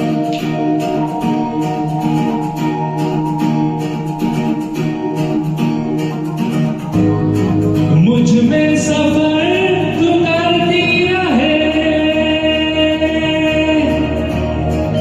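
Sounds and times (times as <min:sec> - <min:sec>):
strummed acoustic guitar: 0:00.0 - 0:15.0
low bass: 0:06.7 - 0:15.0.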